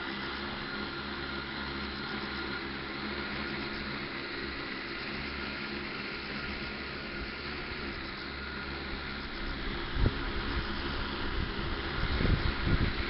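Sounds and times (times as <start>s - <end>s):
drone motors and propellers humming: 0.0s - 13.0s.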